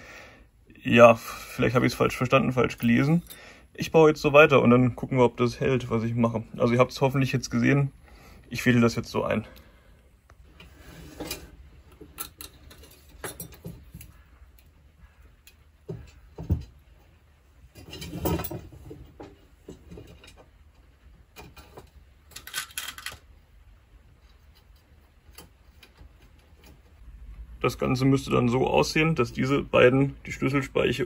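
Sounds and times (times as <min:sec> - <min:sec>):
light metallic clicks and rattles: 0:11.2 - 0:14.7, 0:17.7 - 0:23.3.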